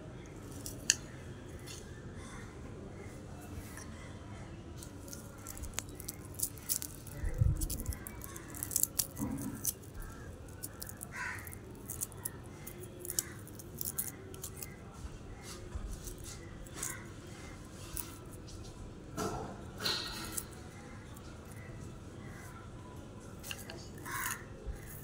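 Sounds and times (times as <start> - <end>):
small objects clicking and rattling: 4.8 - 14.8, 15.8 - 17.1, 17.8 - 18.2, 19.8 - 21.7, 23.4 - 25.0.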